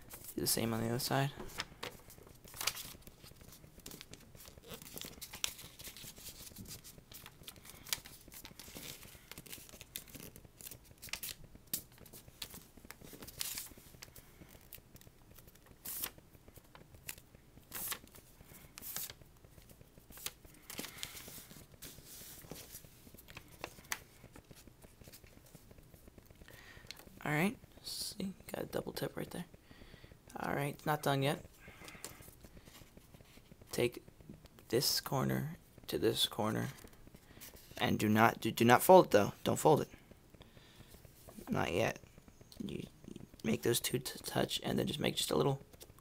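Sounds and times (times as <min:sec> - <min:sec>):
paper rustling and folding: 0:00.0 - 0:27.2, 0:36.1 - 0:40.0, 0:40.7 - 0:46.0.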